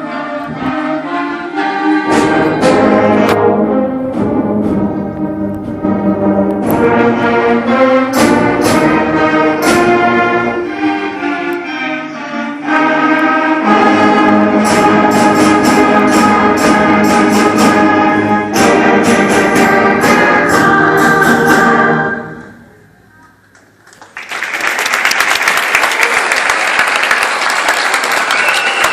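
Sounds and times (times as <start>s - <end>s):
brass and wind instruments chords: 0.0s - 22.8s
drum hits: 2.1s - 7.4s, 8.1s - 10.3s, 14.2s - 22.0s.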